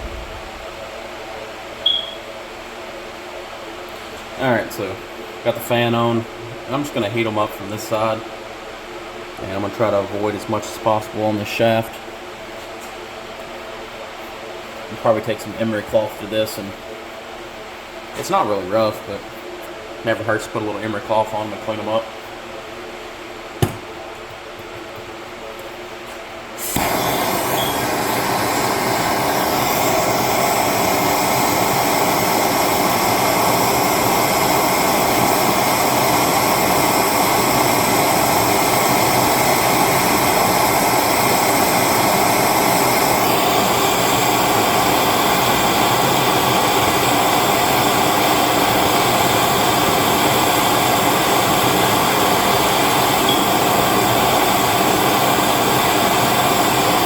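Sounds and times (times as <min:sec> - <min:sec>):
gas torch hissing: 0:23.6 - 0:24.0, 0:26.6 - 0:57.0
torch igniter click: 0:23.6 - 0:24.0, 0:26.6 - 0:57.0.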